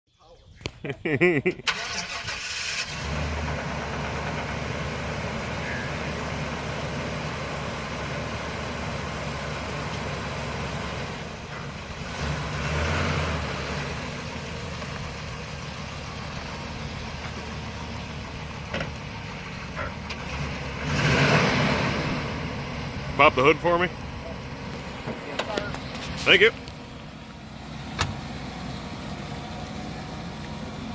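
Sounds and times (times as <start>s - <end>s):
pickup engine idling with knock: 3.6s - 12.0s, 14.0s - 20.5s, 22.3s - 30.9s.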